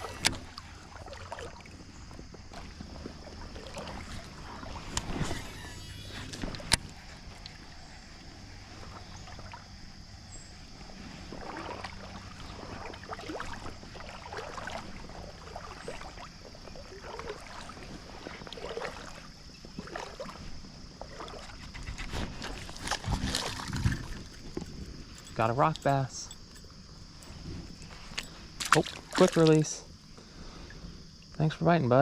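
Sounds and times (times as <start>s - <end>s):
water sloshing around wading legs: 0.0s - 30.9s.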